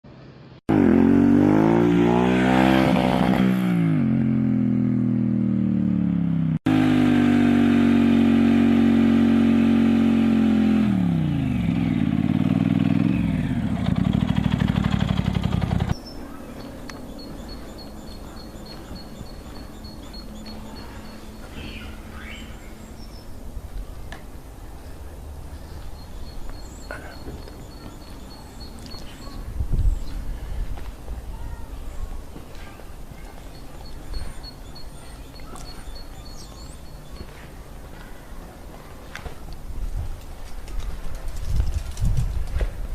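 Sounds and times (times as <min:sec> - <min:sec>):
motorcycle engine revving: 0:00.5 - 0:23.9
faint steady high tone: 0:16.0 - 0:24.0.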